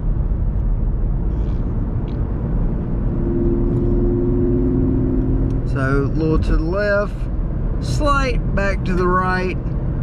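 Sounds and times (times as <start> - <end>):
car engine and road noise: 0.0 - 10.0
steady engine drone: 0.0 - 10.0.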